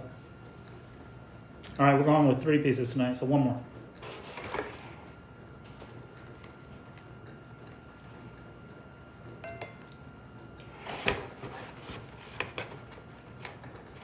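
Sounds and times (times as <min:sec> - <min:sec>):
faint steady hum: 0:00.0 - 0:14.0
dishes and cutlery clinking: 0:09.4 - 0:10.0.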